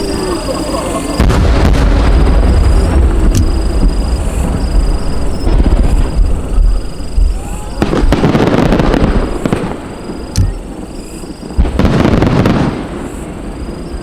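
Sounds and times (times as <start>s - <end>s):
firework crackling: 0.0s - 14.0s
firework shells bursting: 0.1s - 12.8s
sharp crack: 1.2s - 4.1s, 7.8s - 10.9s.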